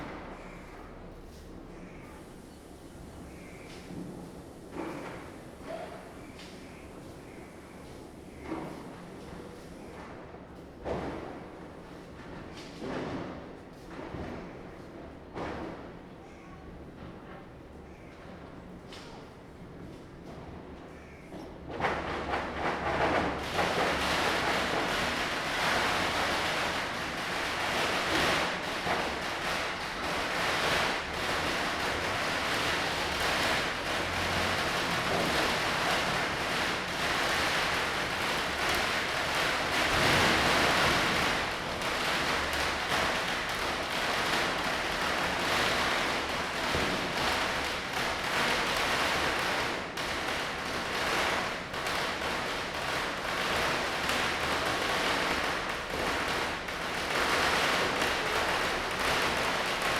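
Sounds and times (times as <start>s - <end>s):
firecrackers crackling: 22.2s - 59.9s
loud firecracker bangs: 23.1s - 59.9s.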